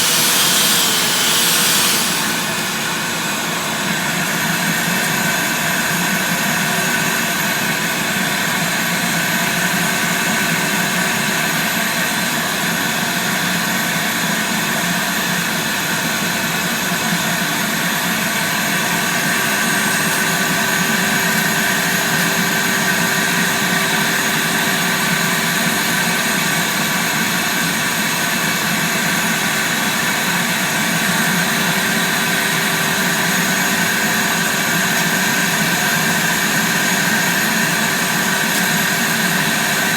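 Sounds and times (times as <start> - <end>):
steady pitched hum: 0.0 - 4.2
drill brush scrubbing carpet: 0.0 - 4.9, 30.6 - 39.9
vacuum cleaner running: 0.0 - 39.9.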